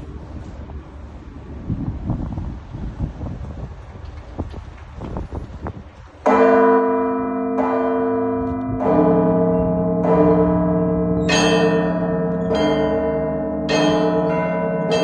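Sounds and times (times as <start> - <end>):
church bells ringing: 6.2 - 15.0.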